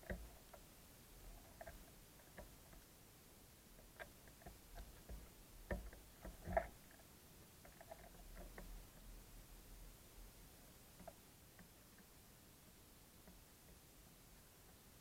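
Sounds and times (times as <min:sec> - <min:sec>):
birds pecking on wooden feeder: 0:00.0 - 0:02.9, 0:03.8 - 0:09.1.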